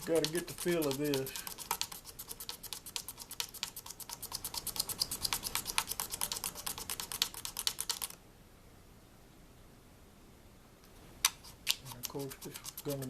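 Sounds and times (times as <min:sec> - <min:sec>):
razor blade scraping wood: 0:00.0 - 0:08.2, 0:11.3 - 0:13.0.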